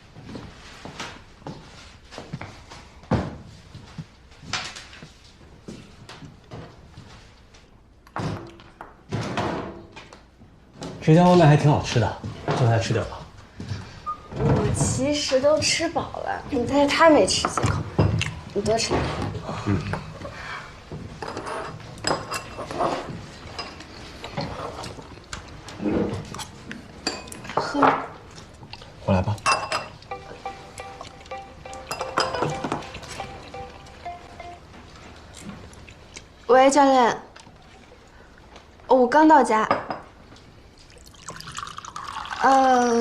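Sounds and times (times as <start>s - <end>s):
dishes and utensils clinking: 21.2s - 25.0s, 27.0s - 28.1s, 29.4s - 34.7s.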